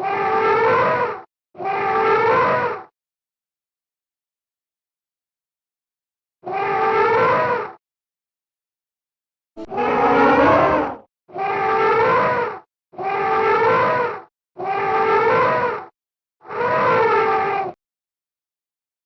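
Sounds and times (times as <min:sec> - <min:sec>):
elephant trumpeting: 0:09.6 - 0:11.0.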